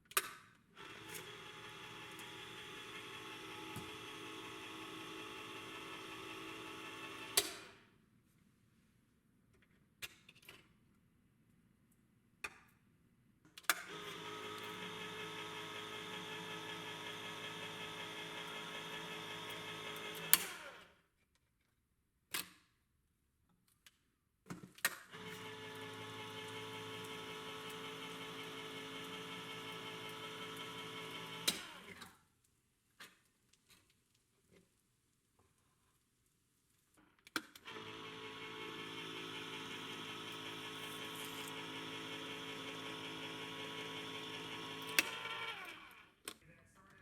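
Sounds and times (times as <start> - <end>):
electric can opener motor hum: 0.8 - 7.7, 13.8 - 21.0, 25.1 - 32.2, 37.6 - 46.2.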